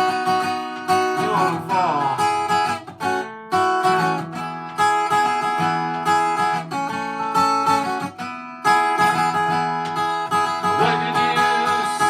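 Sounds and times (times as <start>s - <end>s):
acoustic guitar strumming chords: 0.0s - 12.0s
person singing: 1.2s - 2.3s, 10.7s - 12.0s.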